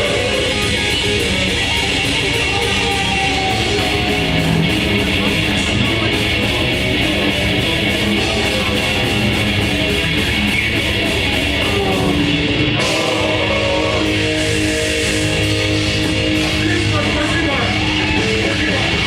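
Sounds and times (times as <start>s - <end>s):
distorted electric guitars: 0.0s - 19.0s
drums: 0.0s - 19.0s.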